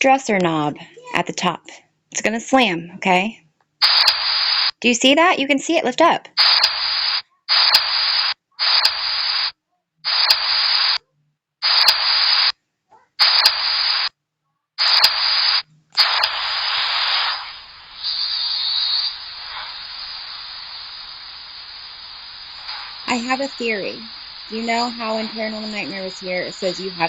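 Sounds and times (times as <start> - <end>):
sharp click: 3.8 - 4.2, 10.1 - 10.5, 11.6 - 12.1, 13.2 - 13.6, 14.8 - 15.3, 15.9 - 17.4
loud recording hiss: 3.8 - 4.8, 6.4 - 11.0, 11.6 - 12.6, 13.2 - 14.1, 14.8 - 27.0.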